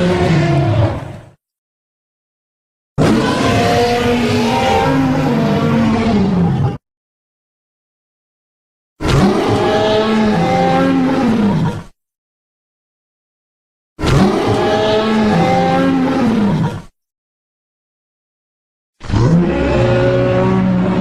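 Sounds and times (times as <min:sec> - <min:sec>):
dinosaur roar: 0:00.0 - 0:01.4, 0:03.0 - 0:06.8, 0:09.0 - 0:11.9, 0:14.0 - 0:16.9, 0:19.0 - 0:21.0.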